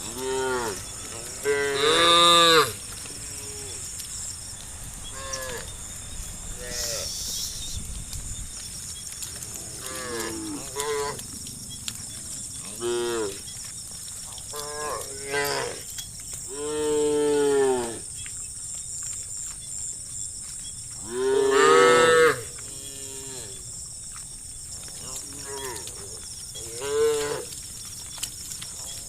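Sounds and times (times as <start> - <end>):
cows mooing: 0.0 - 4.1, 5.1 - 5.7, 9.3 - 11.3, 12.3 - 13.5, 14.5 - 15.9, 16.5 - 18.0, 21.0 - 23.6, 25.0 - 27.6
faint high hiss: 6.5 - 7.8.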